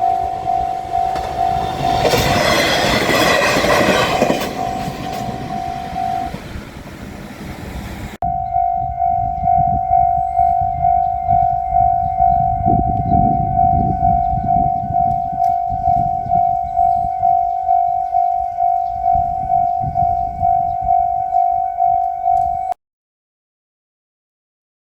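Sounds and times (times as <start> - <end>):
level-crossing electronic bell: 0.0 - 6.5, 8.2 - 22.8
low rumble: 4.1 - 22.0.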